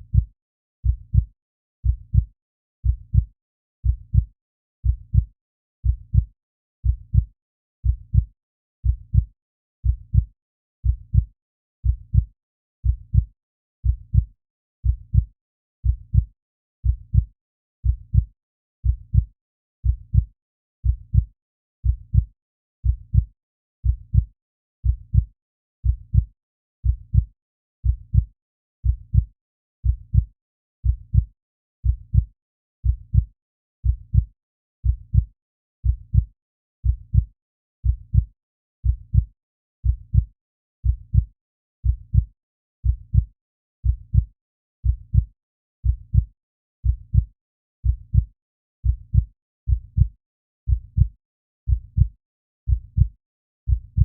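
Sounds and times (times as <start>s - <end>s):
heartbeat double thump: 47.1s - 50.1s, 50.7s - 51.1s, 51.7s - 52.1s, 52.7s - 53.1s, 53.7s - 54.0s.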